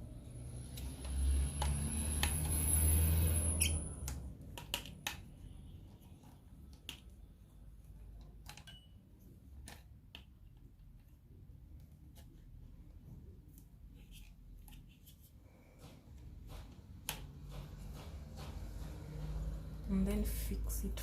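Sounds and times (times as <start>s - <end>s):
small plastic clicks and knocks: 4.0s - 8.8s, 9.5s - 12.4s.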